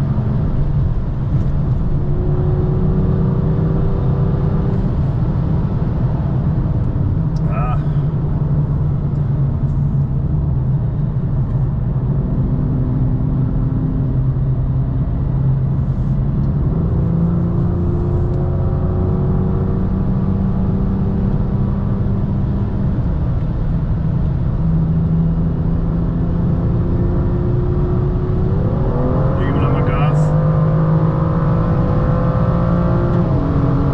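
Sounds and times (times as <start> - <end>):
car engine at part throttle: 0.0 - 33.9.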